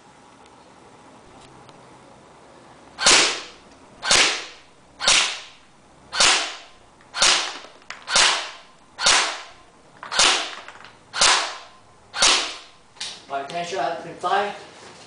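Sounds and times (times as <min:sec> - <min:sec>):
airsoft rifle shots cracking: 0:03.0 - 0:13.1.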